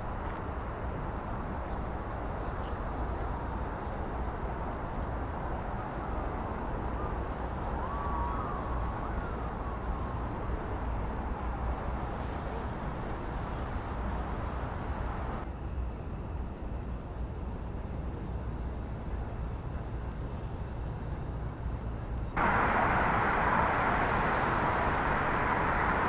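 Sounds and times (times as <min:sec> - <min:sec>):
low traffic rumble: 0:22.4 - 0:26.0.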